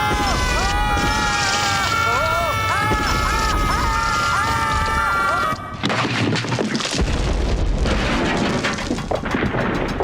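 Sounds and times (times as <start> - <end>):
rock cracks and thuds: 5.8 - 10.0
rumbling crash of falling rock: 5.8 - 10.0.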